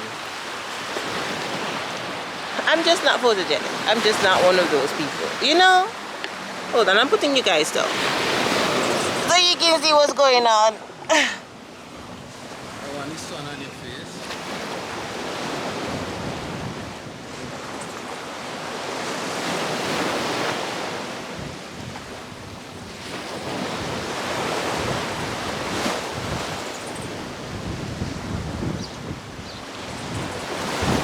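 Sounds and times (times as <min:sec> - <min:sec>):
sea waves breaking on beach: 0:00.0 - 0:31.0
wind buffeting microphone: 0:11.8 - 0:18.2, 0:19.7 - 0:31.0.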